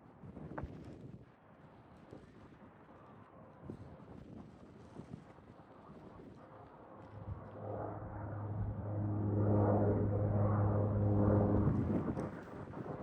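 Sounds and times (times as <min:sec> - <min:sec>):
turboprop aircraft drone: 0:05.8 - 0:13.0.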